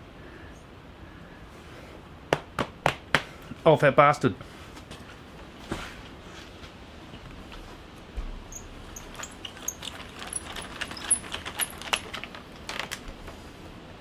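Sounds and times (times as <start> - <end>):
light metallic clicks and jingles: 8.5 - 13.0.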